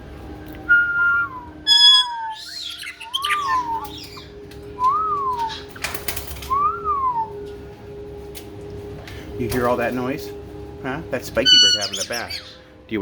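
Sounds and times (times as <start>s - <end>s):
parrot whistling: 0.7s - 5.7s, 11.4s - 12.6s
wings flapping: 3.0s - 6.9s.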